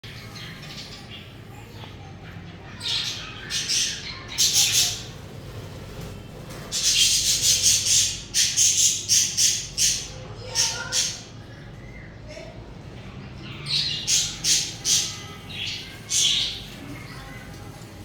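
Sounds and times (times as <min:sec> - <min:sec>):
budgerigars chirping and squawking: 0:02.6 - 0:05.8, 0:06.4 - 0:12.0, 0:13.4 - 0:17.2.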